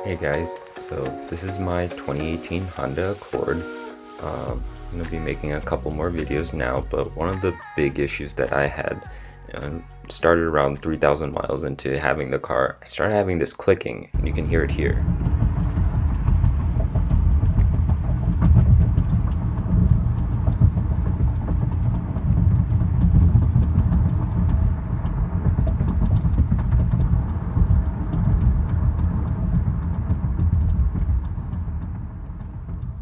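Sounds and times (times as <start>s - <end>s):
car road and engine rumble: 14.2s - 33.0s.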